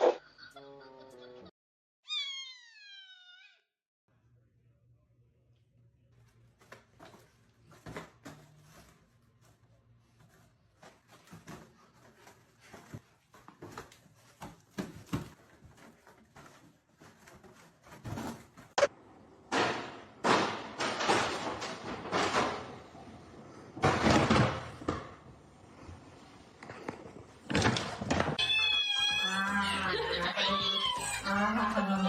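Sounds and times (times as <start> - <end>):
cat crying: 2.1 - 3.7, 28.4 - 32.0.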